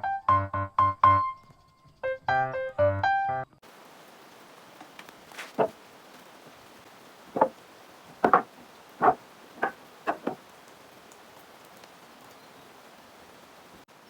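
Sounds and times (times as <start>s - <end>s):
wood being struck: 5.6s - 5.8s, 7.3s - 10.4s.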